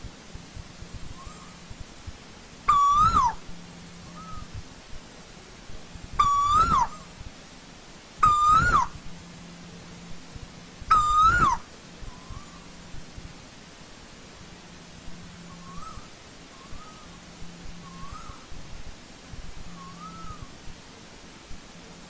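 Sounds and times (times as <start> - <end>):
bird whistled calls: 1.0 - 1.7, 2.7 - 3.4, 4.1 - 4.6, 6.2 - 7.1, 8.2 - 9.0, 10.9 - 12.7, 15.4 - 18.5, 19.7 - 20.6
faint short bird calls: 1.1 - 1.7, 2.7 - 4.6, 6.2 - 7.2, 8.2 - 9.0, 10.9 - 12.8, 15.4 - 18.6, 19.7 - 20.6.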